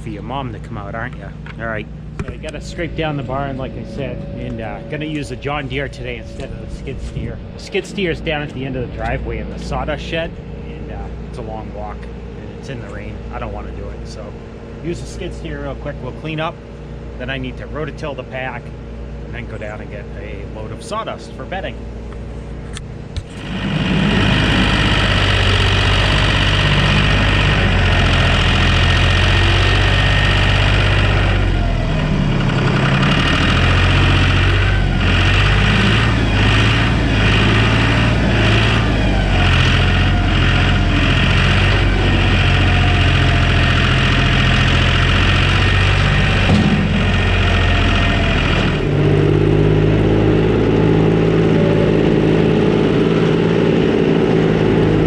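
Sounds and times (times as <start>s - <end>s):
tractor engine running: 0.0s - 55.0s
clunks: 1.0s - 7.6s, 39.8s - 49.0s.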